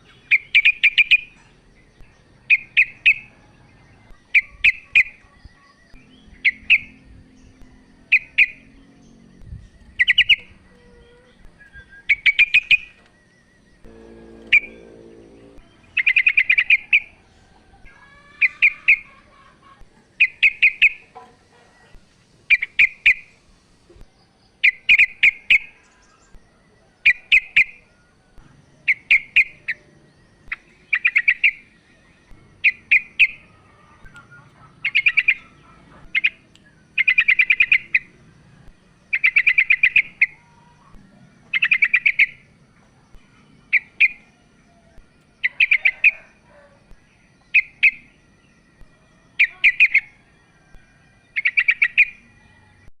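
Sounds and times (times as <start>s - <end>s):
bird calling with chattering clicks: 9.4s - 17.2s, 34.0s - 38.1s.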